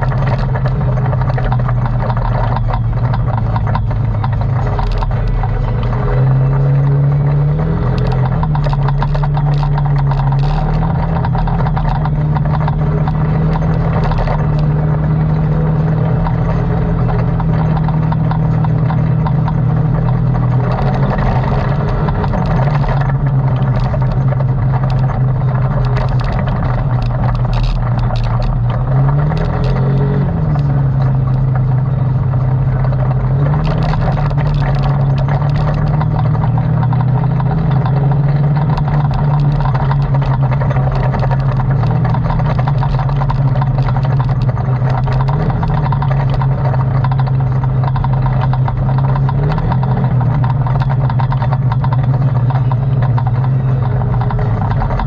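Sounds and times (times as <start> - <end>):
atv engine running: 0.0 - 55.0
clatter: 0.0 - 55.0.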